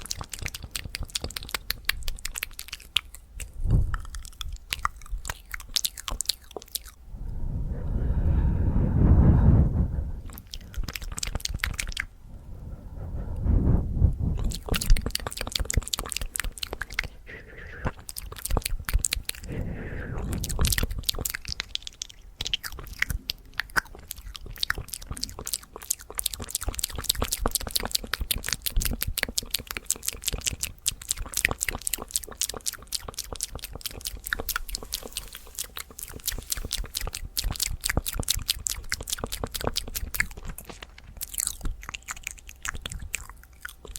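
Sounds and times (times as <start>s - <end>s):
wet tongue and lip clicks: 0.0s - 7.0s, 10.2s - 12.2s, 14.3s - 43.9s
breathy swells: 7.1s - 10.3s.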